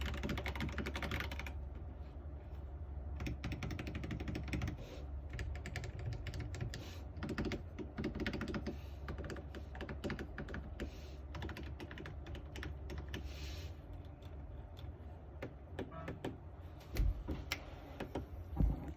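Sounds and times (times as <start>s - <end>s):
mechanical keyboard typing: 0.0s - 1.6s, 3.2s - 13.2s.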